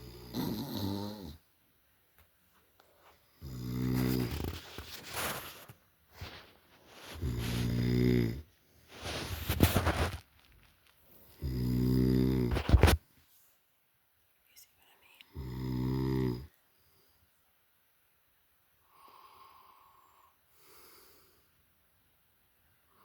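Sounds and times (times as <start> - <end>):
man snoring heavily: 0.0 - 1.4, 3.4 - 4.6, 7.2 - 8.5, 11.4 - 12.5, 15.4 - 16.5.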